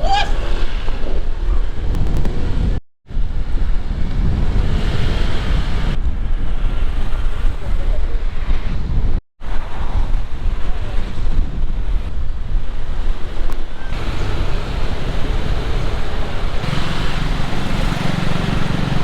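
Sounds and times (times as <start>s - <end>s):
road noise: 0.0s - 19.0s
wind buffeting microphone: 0.0s - 19.0s
motorbike engine: 13.9s - 19.0s.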